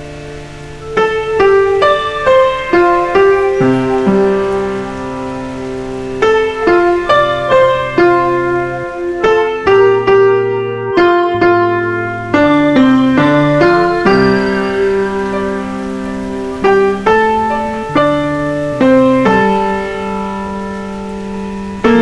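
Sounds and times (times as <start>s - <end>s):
gentle solo piano: 0.0s - 22.0s.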